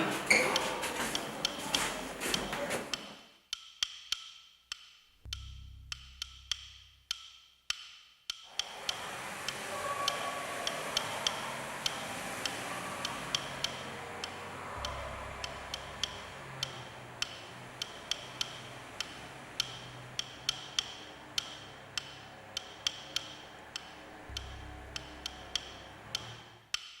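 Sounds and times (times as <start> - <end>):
clock-like ticking: 0.0 - 27.0
faint low sustained tones: 14.6 - 17.2, 24.1 - 26.2.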